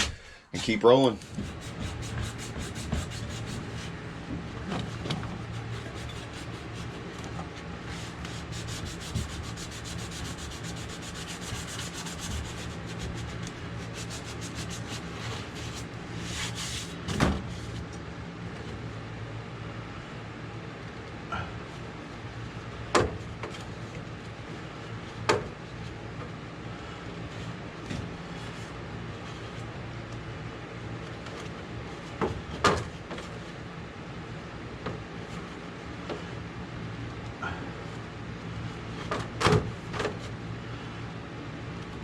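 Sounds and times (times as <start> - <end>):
rubbing and scraping: 0.0 - 17.8
low steady hum: 0.0 - 42.0.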